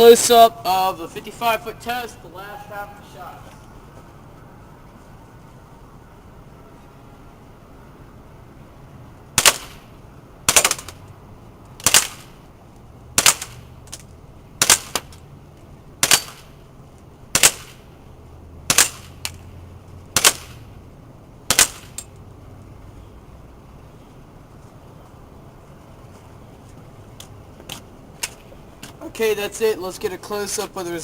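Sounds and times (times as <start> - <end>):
airsoft pistol shots: 9.4 - 9.9, 10.5 - 11.0, 11.8 - 12.3, 13.2 - 13.6, 14.6 - 15.1, 16.0 - 16.5, 17.3 - 17.8, 18.7 - 19.2, 20.2 - 20.6, 21.5 - 22.0.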